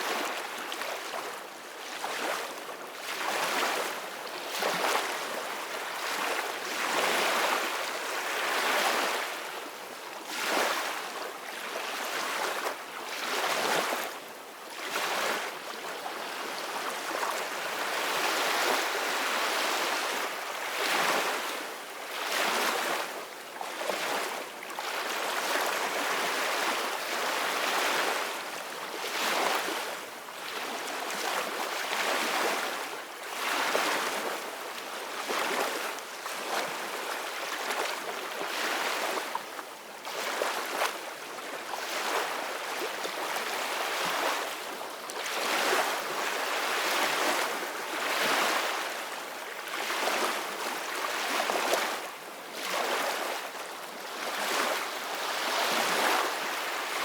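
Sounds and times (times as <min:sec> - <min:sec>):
ocean waves breaking on beach: 0:41.8 - 0:57.0.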